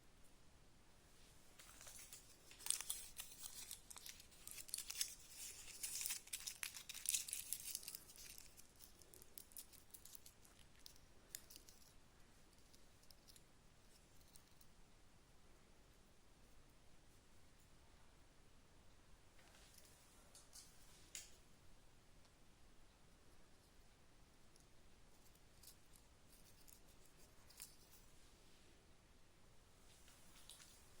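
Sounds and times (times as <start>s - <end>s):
crinkling tearing handling noise: 1.6s - 11.8s.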